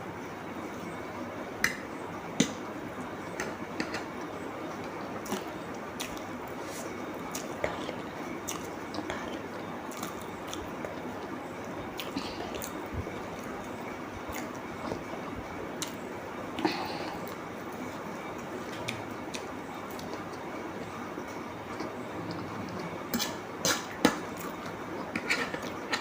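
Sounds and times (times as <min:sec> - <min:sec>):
wet chewing of food: 0:03.4 - 0:15.1, 0:16.6 - 0:20.9.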